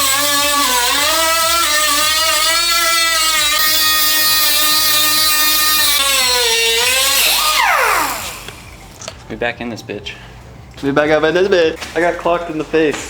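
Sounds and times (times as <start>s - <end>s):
grinder cutting sheet metal: 0.0s - 8.8s.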